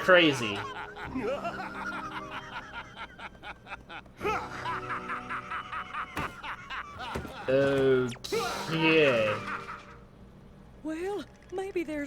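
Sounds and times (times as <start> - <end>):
soft background music: 0.0 - 12.0
cartoon man cackling laughter: 0.4 - 7.6.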